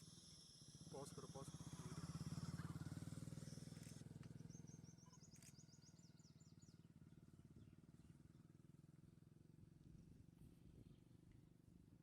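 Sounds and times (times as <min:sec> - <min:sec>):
small bird chirping: 0:03.4 - 0:06.8.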